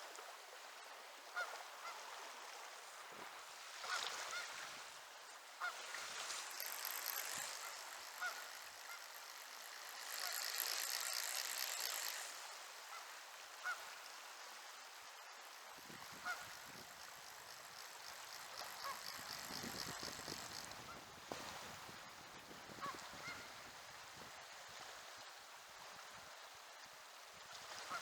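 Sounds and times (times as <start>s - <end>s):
goose-like honking: 16.2s - 16.8s.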